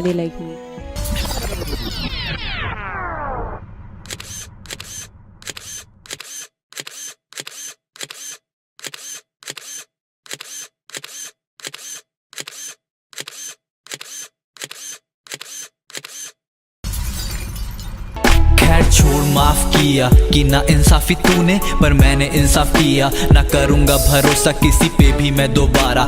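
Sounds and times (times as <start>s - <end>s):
shattering crash: 16.9s - 19.0s.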